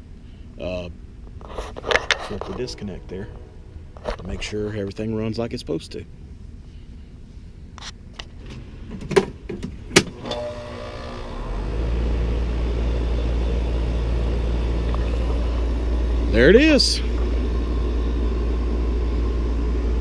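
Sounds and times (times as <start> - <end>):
compressor and fan humming: 0.0 - 20.0.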